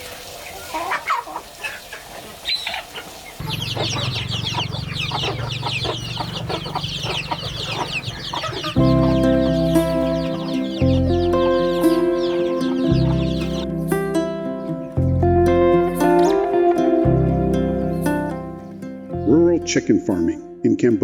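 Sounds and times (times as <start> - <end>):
chickens clucking and calling: 0.0 - 18.9
steady low hum: 3.4 - 11.8
background music: 3.5 - 21.0.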